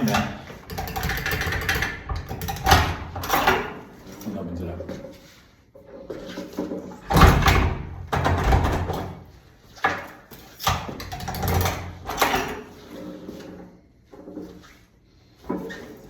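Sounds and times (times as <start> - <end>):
door rattling in frame: 0.0 - 3.8, 7.0 - 9.2.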